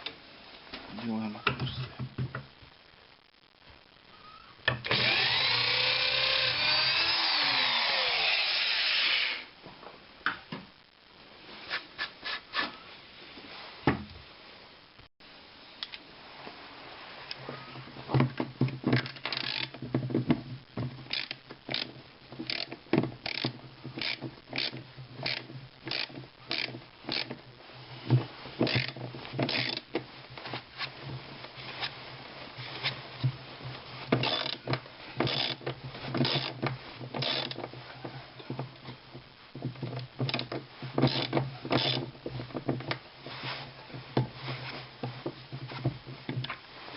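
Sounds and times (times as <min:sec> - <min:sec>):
electric drill boring: 0:04.8 - 0:09.5.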